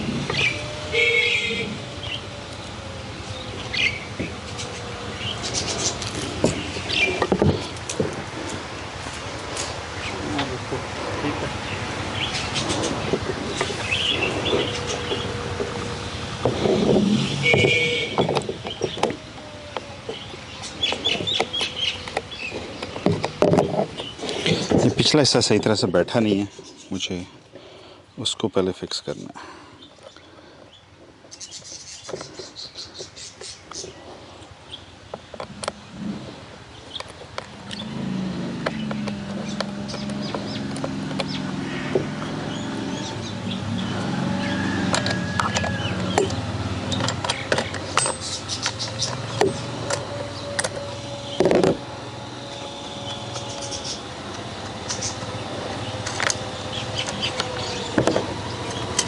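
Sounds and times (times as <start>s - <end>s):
low engine hum: 0.0s - 28.2s, 29.9s - 59.0s
birds chirping: 0.0s - 59.0s
chainsaw parts clicking and knocking: 44.8s - 52.6s, 53.2s - 59.0s.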